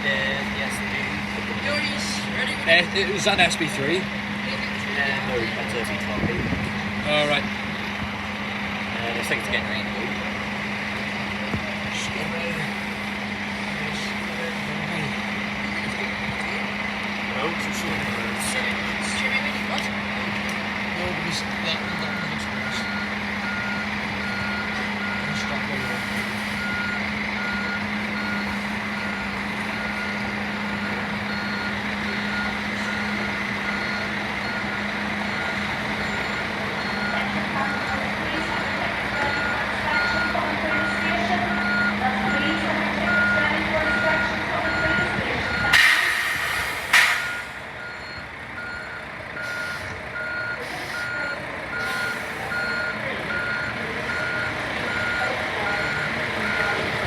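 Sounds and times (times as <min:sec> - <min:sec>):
low engine hum: 0:00.0 - 0:57.0
reversing alarm beeping: 0:21.1 - 0:57.0.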